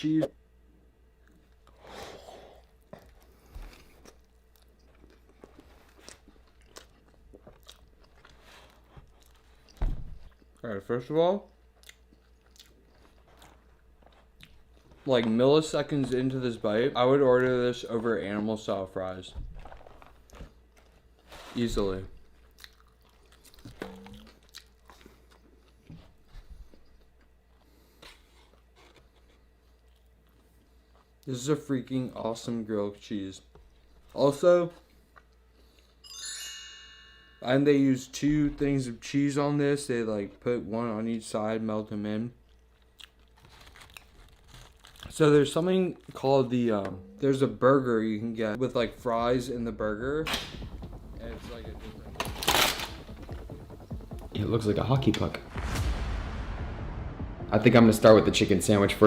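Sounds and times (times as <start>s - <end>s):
quiet chewing: 2.6s - 10.7s, 11.4s - 15.0s, 22.2s - 31.3s.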